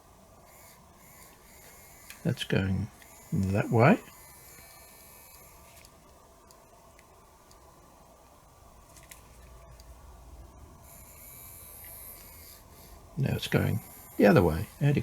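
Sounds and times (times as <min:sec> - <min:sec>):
small motor running faintly: 0:00.0 - 0:15.0
faint clicks: 0:01.2 - 0:02.3, 0:05.3 - 0:10.0.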